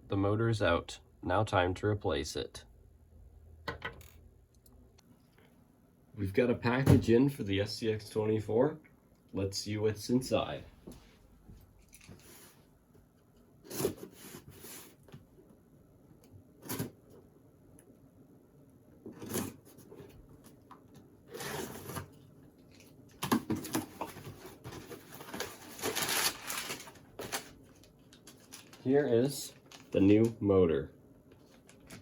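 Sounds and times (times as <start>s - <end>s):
packaging rustling and crinkling: 21.3s - 30.4s, 31.3s - 32.0s.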